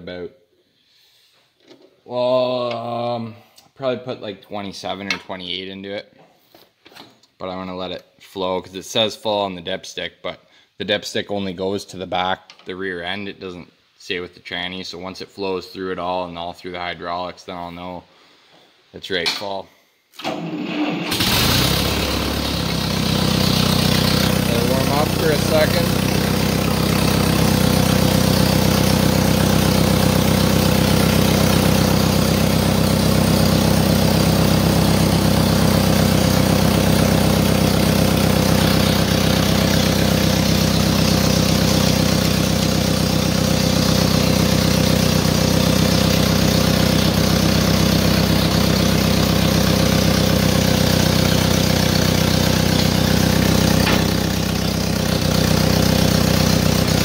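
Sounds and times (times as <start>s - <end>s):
tractor engine idling: 20.8s - 57.0s.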